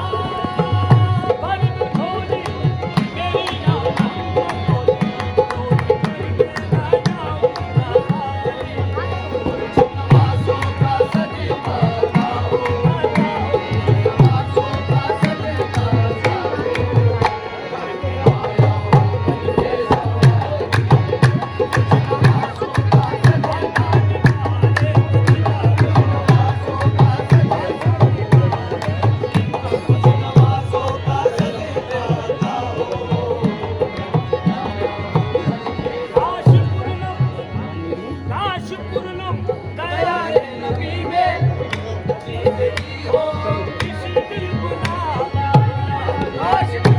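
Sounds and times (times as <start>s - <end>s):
people singing: 0.0s - 46.9s
hand drums fast rhythm: 18.5s - 31.6s.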